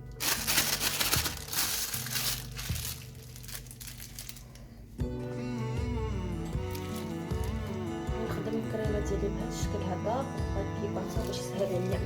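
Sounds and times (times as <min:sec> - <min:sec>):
plastic bag crinkling: 0:00.0 - 0:04.8, 0:06.6 - 0:08.6.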